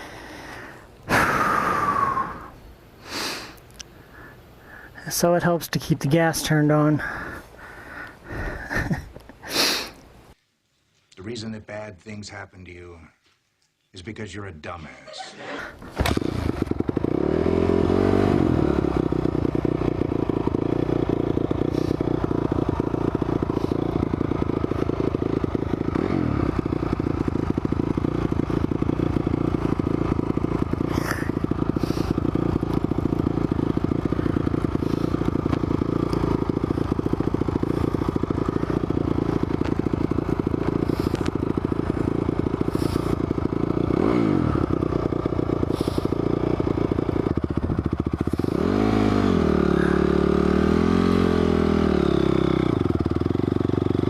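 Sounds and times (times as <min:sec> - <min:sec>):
dirt bike engine revving: 0:15.6 - 0:54.0.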